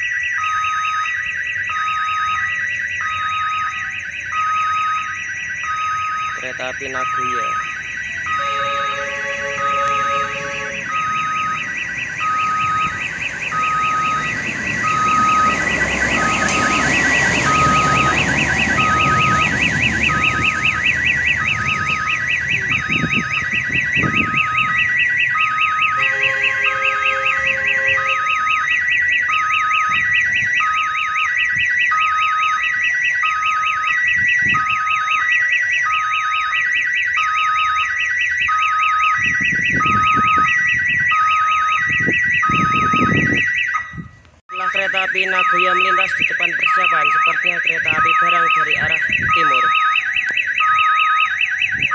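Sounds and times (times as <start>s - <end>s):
warbling level-crossing siren: 0.0s - 51.9s
repeating beep: 1.7s - 30.1s, 39.2s - 51.9s.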